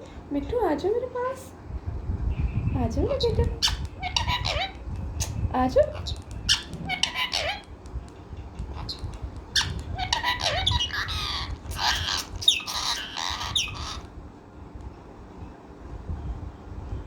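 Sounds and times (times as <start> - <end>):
parrot squawking: 3.2 - 7.8, 8.6 - 14.1.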